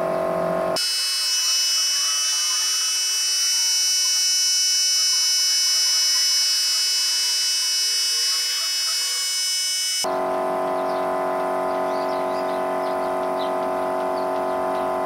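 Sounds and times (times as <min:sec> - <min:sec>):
electric air compressor whining: 0:00.7 - 0:11.7.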